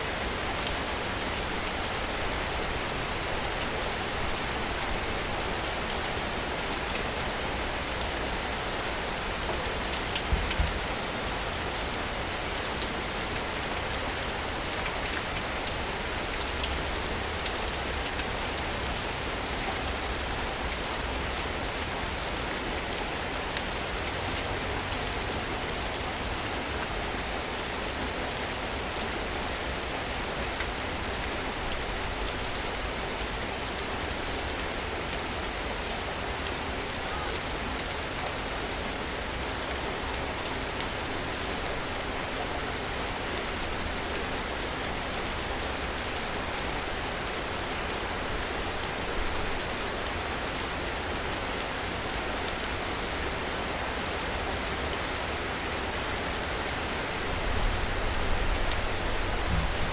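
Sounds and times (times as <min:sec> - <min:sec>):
steady rain falling: 0:00.0 - 0:59.9
low thump: 0:10.3 - 0:10.8, 0:59.4 - 0:59.9.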